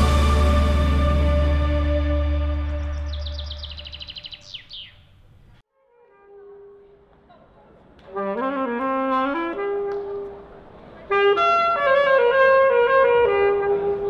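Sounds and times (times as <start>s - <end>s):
background music melody: 0.0s - 4.3s.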